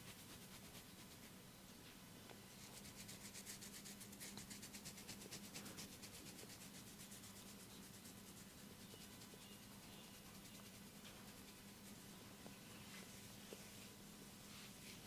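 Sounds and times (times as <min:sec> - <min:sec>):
hands rubbing in massage strokes: 0:02.6 - 0:12.0.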